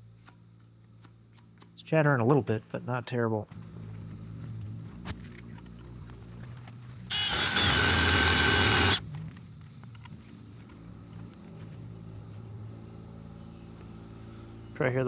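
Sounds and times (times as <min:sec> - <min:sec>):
handheld drill in steel: 0:07.1 - 0:09.0.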